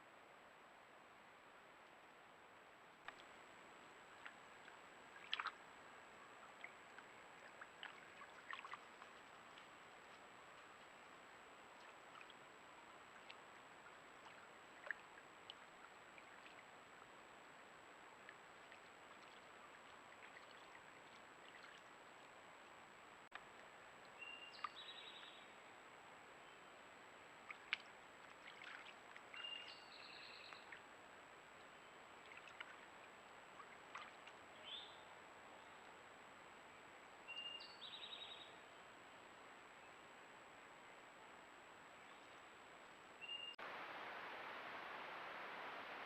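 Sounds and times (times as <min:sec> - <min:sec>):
faint clicks: 0:03.0 - 0:03.4
bird chirping: 0:24.2 - 0:25.5, 0:29.4 - 0:30.8, 0:37.3 - 0:38.6, 0:43.2 - 0:43.6
stream rushing: 0:43.6 - 0:46.0.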